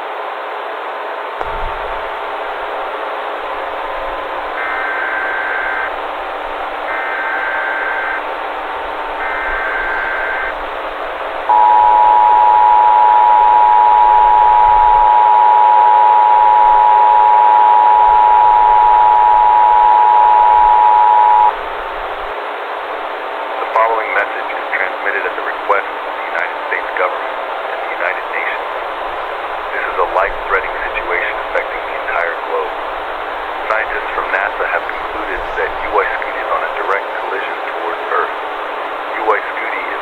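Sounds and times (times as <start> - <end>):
radio static hiss: 1.3 - 40.0
data tone bursts: 4.0 - 10.7, 11.4 - 21.6
two-tone attention signal: 9.2 - 10.6, 11.5 - 21.6.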